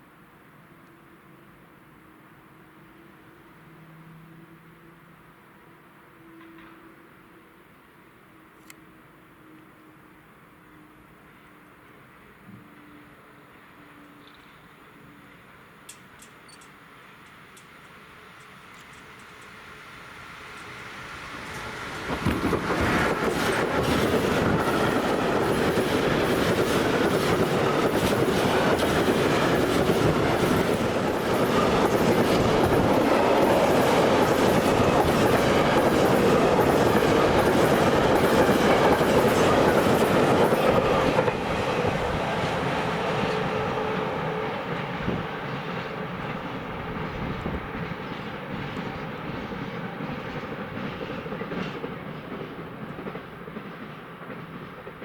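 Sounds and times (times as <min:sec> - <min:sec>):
train wheels clattering on rails: 0:20.4 - 0:55.0.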